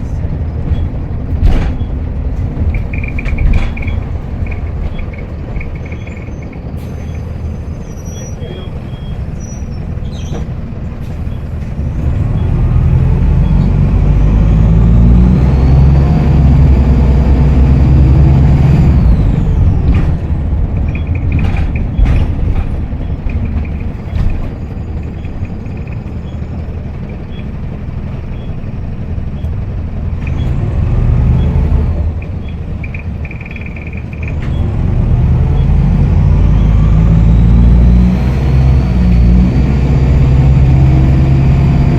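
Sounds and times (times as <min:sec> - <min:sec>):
bus diesel engine pulling: 0:00.0 - 0:41.9
sharp knocks: 0:00.6 - 0:05.8.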